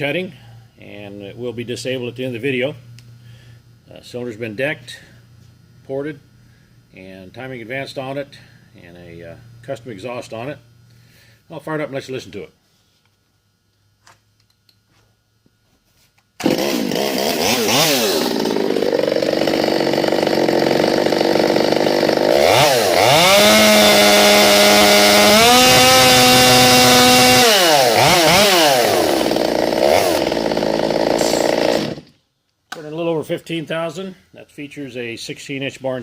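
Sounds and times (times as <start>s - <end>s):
chainsaw engine revving: 16.4s - 32.1s.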